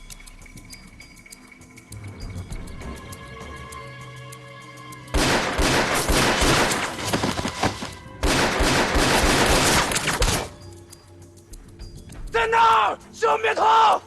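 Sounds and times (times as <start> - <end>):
heavy rapid gunfire: 5.2 - 7.0, 8.2 - 10.0.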